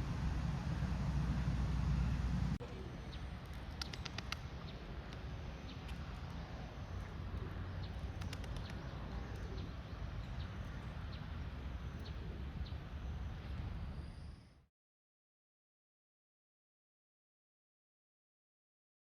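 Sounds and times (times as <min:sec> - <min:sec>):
steady low rumble: 0:00.0 - 0:03.8.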